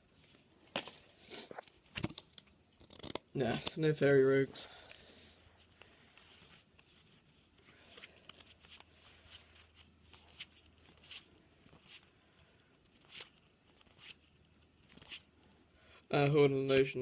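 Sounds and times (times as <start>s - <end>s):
trading cards sliding: 12.8s - 15.3s.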